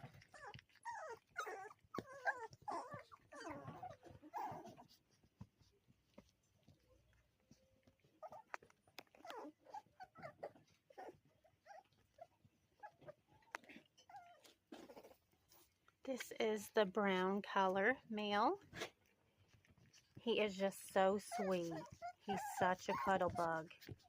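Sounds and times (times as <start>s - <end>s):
puppies whimpering and yipping: 0.0s - 5.3s, 7.9s - 13.4s, 14.0s - 15.2s, 20.9s - 24.0s.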